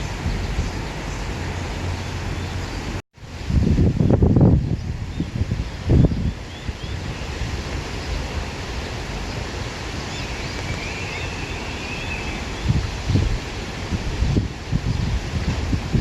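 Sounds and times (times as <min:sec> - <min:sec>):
wind blowing through grass: 0:00.0 - 0:16.0
wind buffeting microphone: 0:00.0 - 0:16.0.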